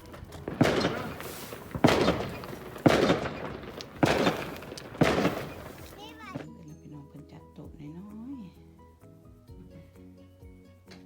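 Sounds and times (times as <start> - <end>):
fireworks bangs: 0.0 - 6.5.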